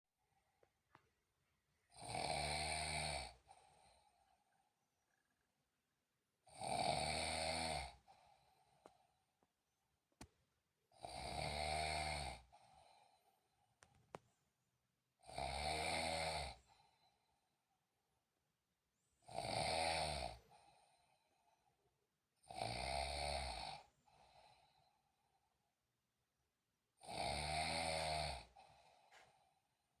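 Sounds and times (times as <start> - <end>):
person snoring loudly: 1.9 - 4.0, 6.5 - 8.3, 11.0 - 13.0, 15.2 - 16.8, 19.2 - 20.8, 22.4 - 24.5, 27.0 - 29.2
faint breathing: 3.4 - 5.2, 7.9 - 9.6, 12.4 - 13.9, 28.5 - 29.7.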